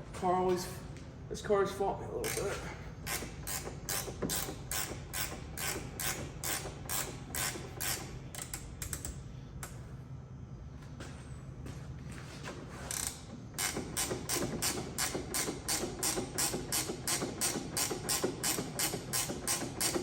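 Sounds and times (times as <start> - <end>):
ratchet wrench clicking: 3.1 - 9.2, 12.9 - 20.0.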